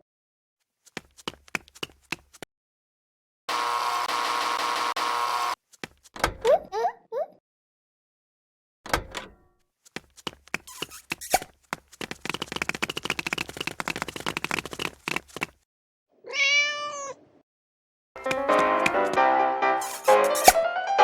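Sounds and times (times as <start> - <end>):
rapid rattling clicks: 12.2 - 15.4
cat meowing: 16.2 - 17.3.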